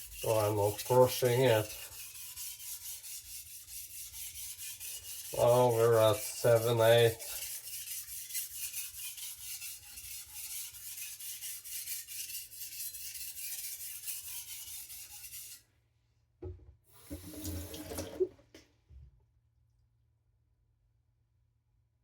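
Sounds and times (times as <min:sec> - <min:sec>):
knife sharpening on whetstone: 0:00.0 - 0:05.8, 0:06.5 - 0:15.6.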